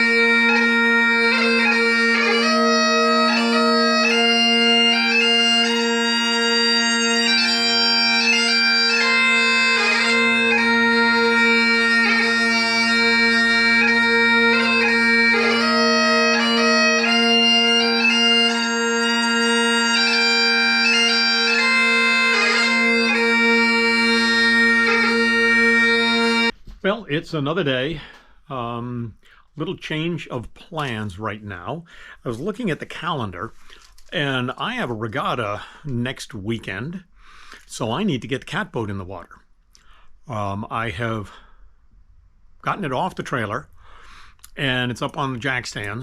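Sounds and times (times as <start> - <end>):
bagpipe melody with drones: 0.0 - 26.6.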